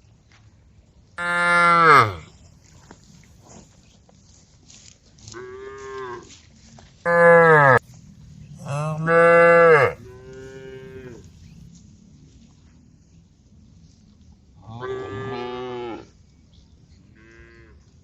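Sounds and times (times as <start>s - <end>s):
cows mooing: 1.2s - 2.3s, 7.1s - 7.8s, 8.6s - 11.2s.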